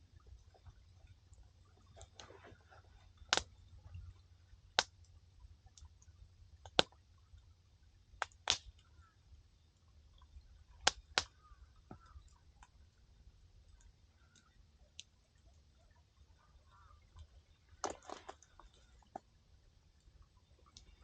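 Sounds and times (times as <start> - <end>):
campfire crackling: 0.0 - 9.1, 9.8 - 21.0
faint low hum: 0.0 - 21.0.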